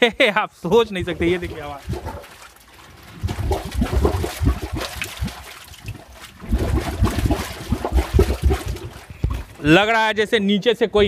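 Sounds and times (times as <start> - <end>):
gas bubbling up through water: 0.8 - 9.7.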